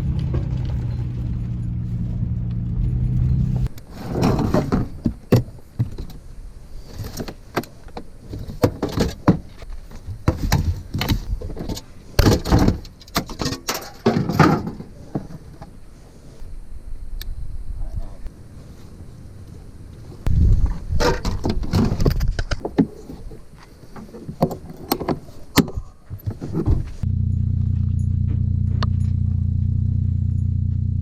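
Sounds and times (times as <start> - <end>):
vehicle engine idling: 0.0 - 3.7, 27.0 - 31.0
clatters knocks and rustles: 0.0 - 15.7.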